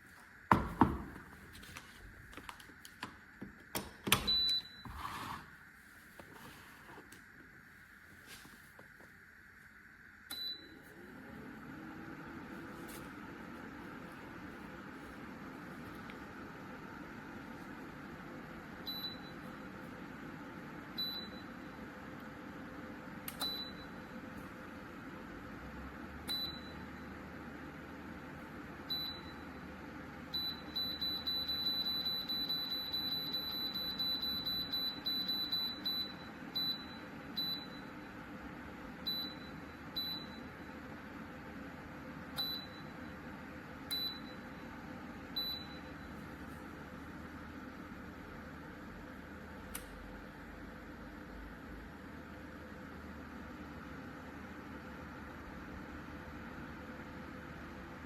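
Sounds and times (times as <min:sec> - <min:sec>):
heater control panel beeping: 0:02.9 - 0:05.3, 0:10.2 - 0:11.0, 0:18.8 - 0:19.8, 0:20.9 - 0:21.8, 0:23.2 - 0:24.6, 0:26.2 - 0:27.2, 0:28.8 - 0:29.7, 0:30.3 - 0:38.2, 0:39.0 - 0:40.8, 0:42.2 - 0:44.7, 0:45.3 - 0:46.6.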